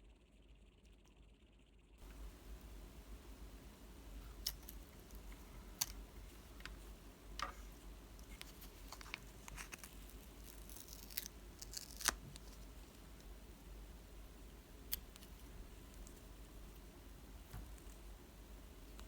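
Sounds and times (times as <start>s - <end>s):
packaging rustling and clicks: 4.3s - 13.0s.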